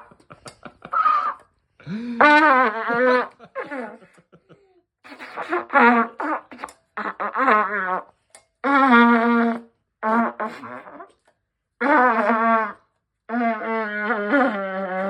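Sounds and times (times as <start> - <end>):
trumpet playing buzzy notes: 2.1 - 4.0, 5.1 - 11.2, 11.8 - 15.0.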